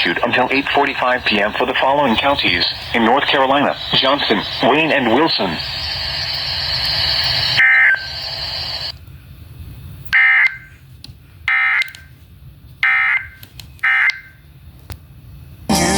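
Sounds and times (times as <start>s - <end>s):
radio static hiss: 0.0s - 9.0s.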